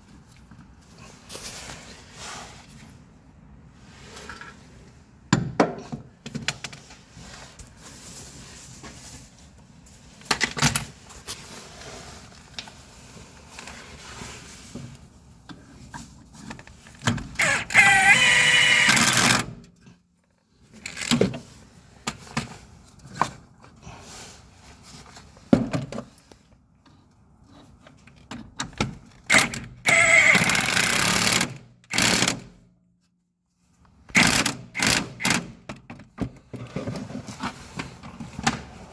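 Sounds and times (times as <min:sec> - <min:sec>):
power tool bursts: 0:17.4 - 0:19.5, 0:29.3 - 0:32.4, 0:34.2 - 0:35.4.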